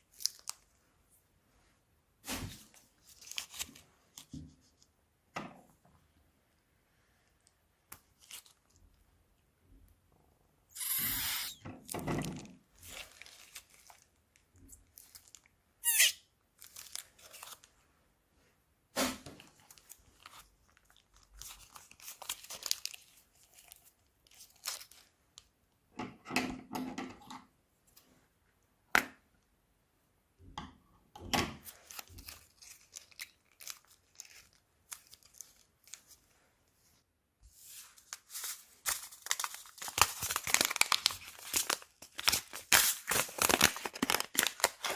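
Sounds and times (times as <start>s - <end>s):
sharp squeak: 10.8s - 11.6s, 15.8s - 16.2s.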